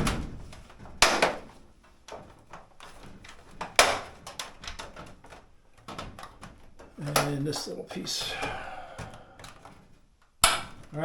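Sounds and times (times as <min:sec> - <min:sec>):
sharp knocks: 0:00.0 - 0:01.6
plastic parts clicking into place: 0:00.0 - 0:11.0.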